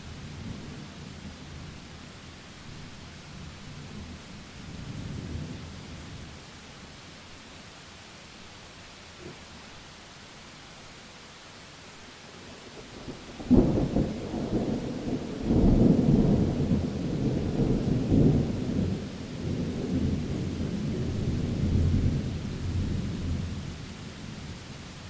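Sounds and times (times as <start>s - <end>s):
steady rain: 0.0s - 25.0s
thunder rumbling: 13.0s - 23.7s.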